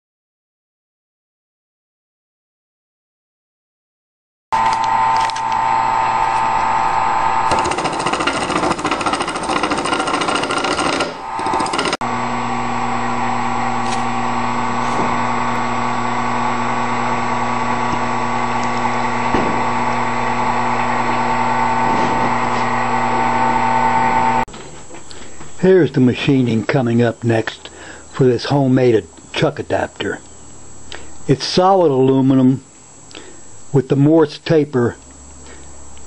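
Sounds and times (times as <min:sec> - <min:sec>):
lathe tool cutting metal: 0:04.6 - 0:24.4
motor hum: 0:04.6 - 0:24.4.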